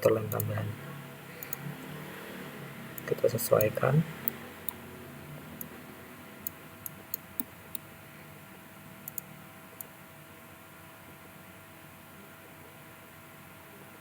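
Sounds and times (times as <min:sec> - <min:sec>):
computer mouse clicking: 0:00.3 - 0:00.6, 0:01.4 - 0:01.6, 0:09.0 - 0:09.9.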